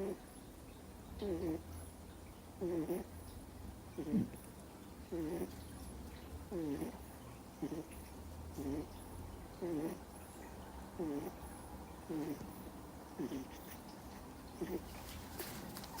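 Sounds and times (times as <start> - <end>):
puppy snoring: 0.0 - 0.3, 1.2 - 1.8, 2.6 - 3.2, 3.9 - 4.5, 5.1 - 5.6, 6.5 - 15.1.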